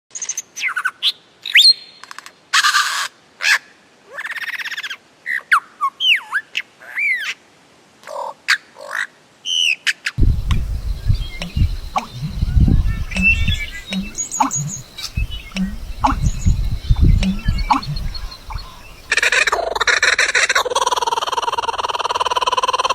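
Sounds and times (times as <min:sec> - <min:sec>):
low rumble: 0:10.2 - 0:19.1
varied bird calls: 0:10.2 - 0:20.0.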